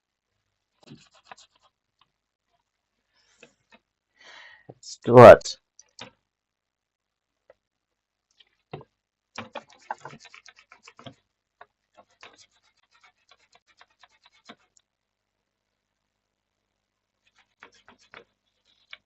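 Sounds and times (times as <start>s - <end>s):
small brush scrubbing: 9.6s - 11.2s, 11.9s - 14.8s, 17.2s - 19.0s.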